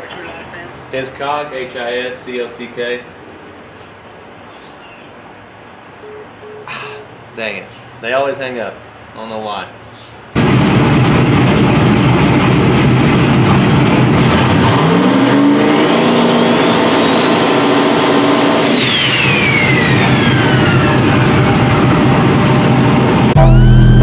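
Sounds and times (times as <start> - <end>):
race car engine accelerating: 10.4 - 24.0.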